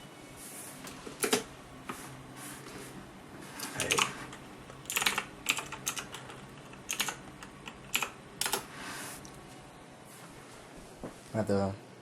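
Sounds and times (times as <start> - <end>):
computer humming: 0.0 - 12.0
sharp clicks and clatters: 3.6 - 8.7.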